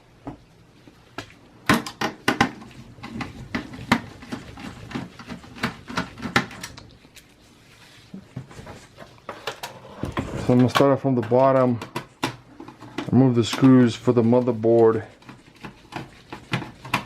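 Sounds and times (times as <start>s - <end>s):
computer parts clicking and knocking: 10.2s - 13.8s.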